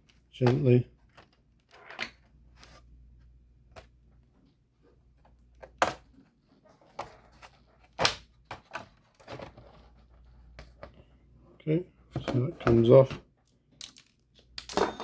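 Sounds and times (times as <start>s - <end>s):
sharp clicks and cracks: 13.8s - 14.8s.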